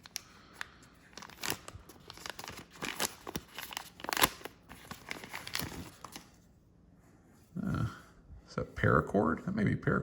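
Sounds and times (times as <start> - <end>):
packaging crinkling and tearing: 0.0 - 6.3.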